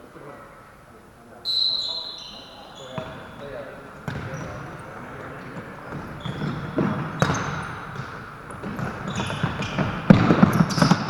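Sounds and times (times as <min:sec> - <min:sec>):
shoes squeaking on court floor: 0:01.5 - 0:11.0
ball kicked thuds: 0:04.0 - 0:11.0.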